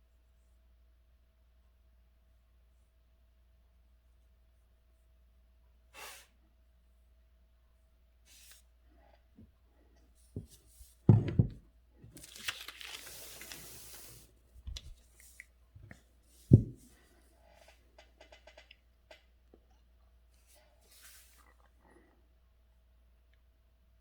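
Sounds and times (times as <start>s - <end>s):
things thumping on a table: 10.4s - 11.7s, 16.5s - 17.0s
paper rustling: 12.1s - 15.4s.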